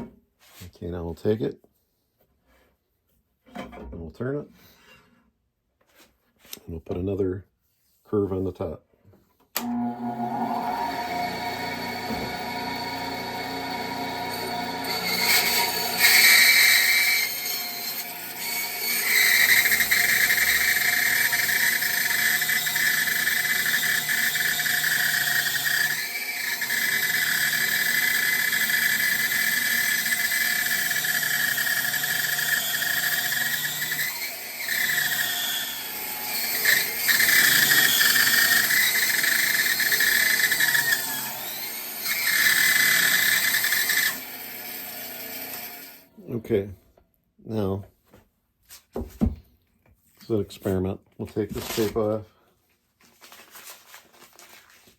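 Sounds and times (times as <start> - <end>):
bandsaw cutting wood: 9.6 - 46.1.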